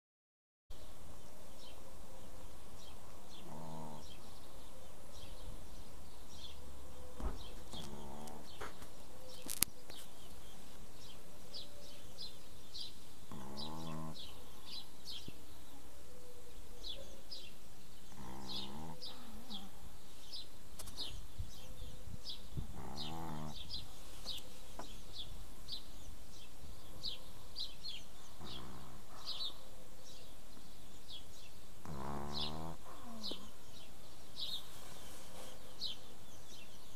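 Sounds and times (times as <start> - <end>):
dog snoring: 3.3 - 4.2, 13.3 - 14.2, 18.1 - 19.7, 22.7 - 23.7, 31.8 - 33.5.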